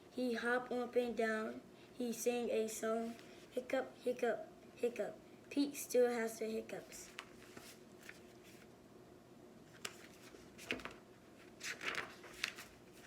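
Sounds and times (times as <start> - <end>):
paper rustling: 7.0 - 8.7, 9.7 - 13.0.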